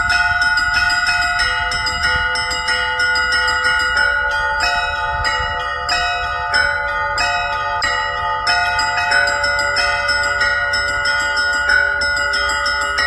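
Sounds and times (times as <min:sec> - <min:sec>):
church bells ringing: 0:00.0 - 0:13.0.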